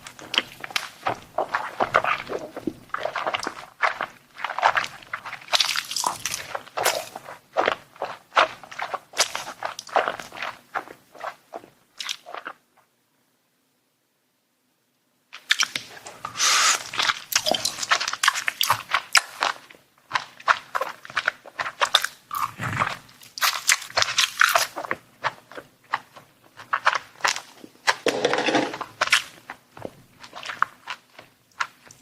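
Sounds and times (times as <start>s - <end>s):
close chewing and biting: 0.0s - 12.6s, 15.4s - 28.1s, 28.7s - 32.0s
wet mouth sounds: 15.5s - 19.4s, 21.8s - 24.7s.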